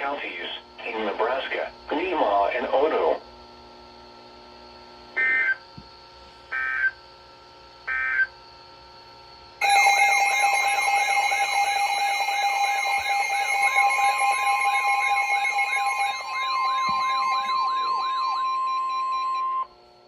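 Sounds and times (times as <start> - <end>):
digital data tone bursts: 9.6 - 19.7
warbling alert tone: 9.6 - 19.7.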